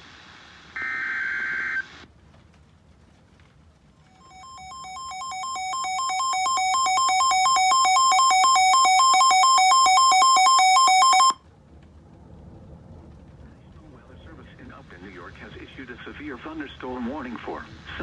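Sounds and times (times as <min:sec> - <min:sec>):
warbling emergency alert tone: 0:04.2 - 0:11.4.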